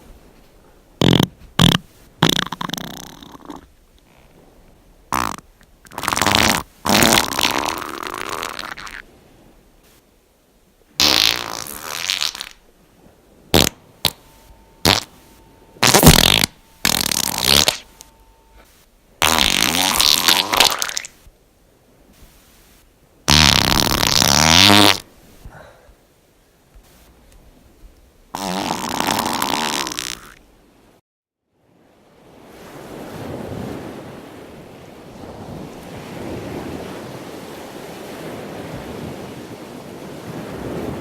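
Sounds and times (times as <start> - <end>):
farts: 1.0 - 4.3, 5.1 - 9.0, 11.0 - 12.6, 13.5 - 14.2, 14.8 - 15.1, 15.8 - 17.9, 19.2 - 21.1, 23.3 - 25.1, 28.4 - 30.4.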